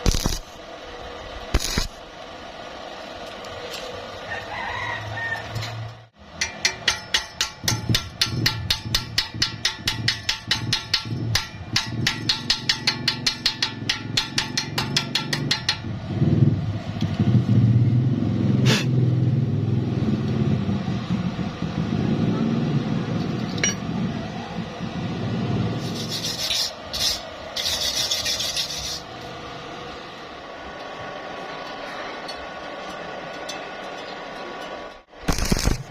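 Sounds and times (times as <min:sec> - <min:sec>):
metal being filed: 0:25.8 - 0:29.1
rough scraping: 0:25.8 - 0:29.3.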